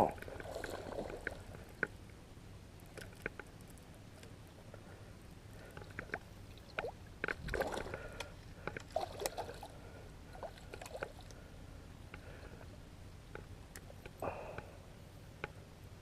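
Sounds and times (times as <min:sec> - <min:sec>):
small clicks and knocks: 0:02.9 - 0:04.4.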